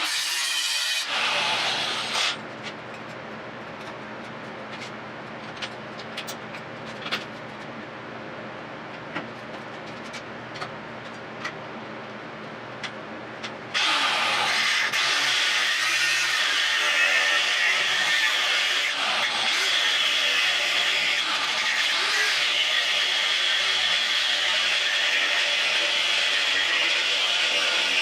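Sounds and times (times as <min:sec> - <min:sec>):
power grinder grinding steel: 0:00.0 - 0:02.4, 0:13.7 - 0:28.0
steady motor hum: 0:00.0 - 0:28.0.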